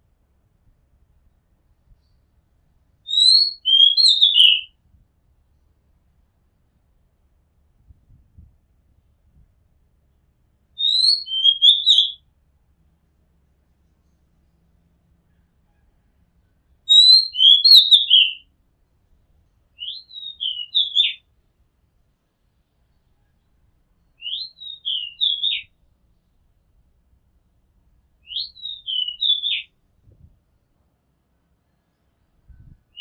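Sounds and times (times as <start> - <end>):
bird whistling song: 3.1 - 4.7, 10.8 - 12.2, 16.9 - 18.4, 19.8 - 21.2, 24.2 - 25.7, 28.2 - 29.7, 32.6 - 33.0.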